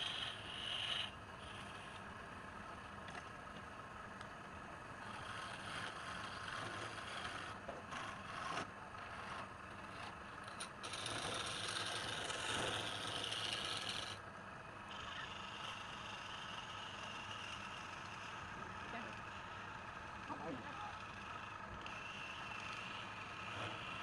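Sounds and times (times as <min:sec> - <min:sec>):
wood lathe running: 0:00.0 - 0:02.0, 0:05.0 - 0:14.2, 0:14.8 - 0:24.0
turning tool scraping wood: 0:00.0 - 0:02.1, 0:05.0 - 0:14.2.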